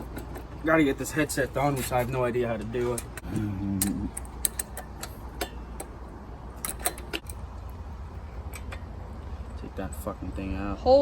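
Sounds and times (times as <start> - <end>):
low steady hum: 0.0 - 11.0
metal tool clicks on bicycle: 2.9 - 6.0.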